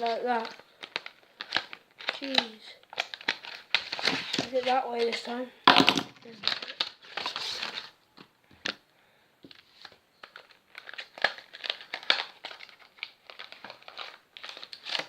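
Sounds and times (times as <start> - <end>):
packaging crinkling: 0.0 - 8.0, 9.5 - 15.0.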